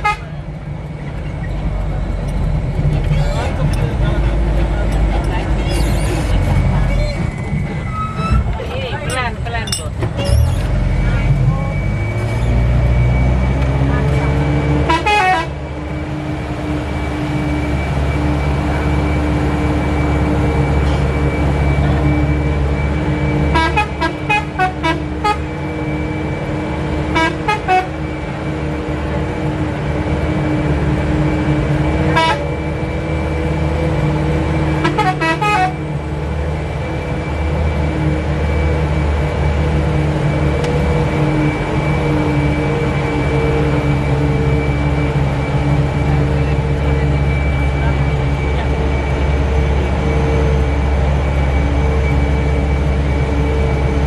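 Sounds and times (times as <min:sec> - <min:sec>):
multi-tone horn toots: 0:00.0 - 0:00.3, 0:14.8 - 0:15.6, 0:23.5 - 0:25.6, 0:27.1 - 0:28.0, 0:32.1 - 0:32.6, 0:34.8 - 0:35.9
bus engine running: 0:00.0 - 0:54.0.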